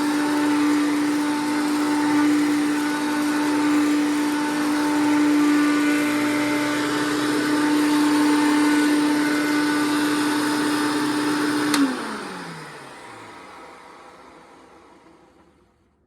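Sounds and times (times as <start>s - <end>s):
vacuum cleaner running: 0.0s - 16.0s
vacuum switch click: 11.6s - 12.0s.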